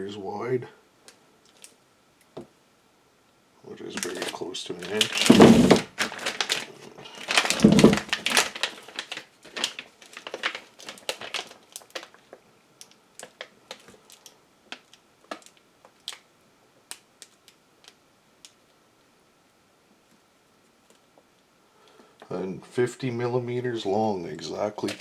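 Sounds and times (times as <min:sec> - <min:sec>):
heavy rubbing knock: 0:05.0 - 0:06.3, 0:07.4 - 0:08.3.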